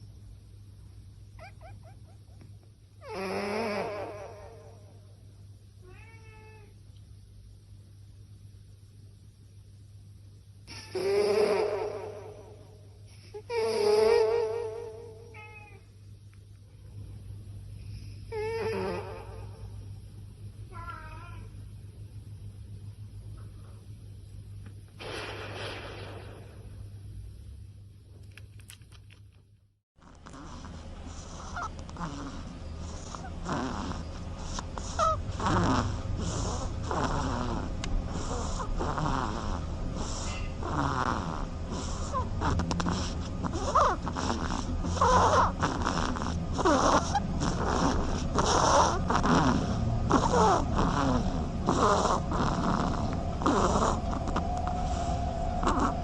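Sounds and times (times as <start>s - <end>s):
steady low hum: 0.0s - 56.0s
animal snoring: 3.0s - 5.0s, 10.8s - 15.3s, 17.8s - 19.8s, 30.0s - 56.0s.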